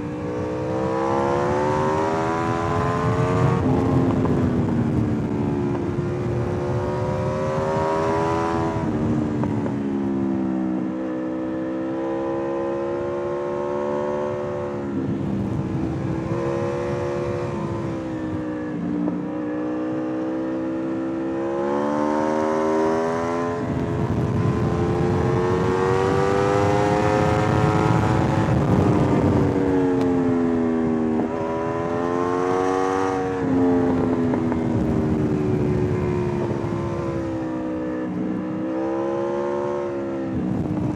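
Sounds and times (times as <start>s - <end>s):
motorcycle engine revving: 0.0s - 10.0s, 10.8s - 40.9s
wind and road noise: 0.0s - 40.9s.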